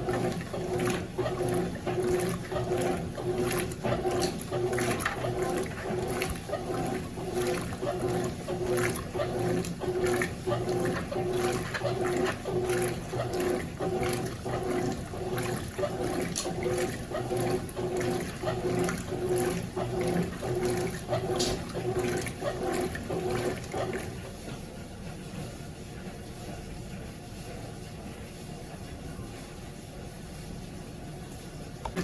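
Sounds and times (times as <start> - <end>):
water sloshing: 0.0 - 24.2
washing machine motor humming: 0.0 - 32.0.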